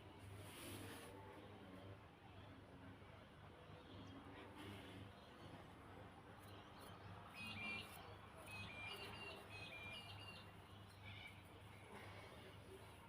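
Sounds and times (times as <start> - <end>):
small bird chirping: 6.4 - 11.7.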